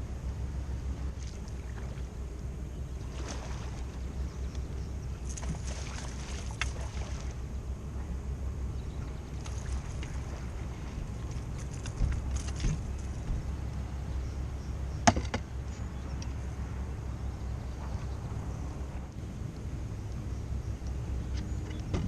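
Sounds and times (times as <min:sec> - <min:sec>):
boat low rumble: 0:00.0 - 0:22.0
light clicks and rattles: 0:11.2 - 0:13.8.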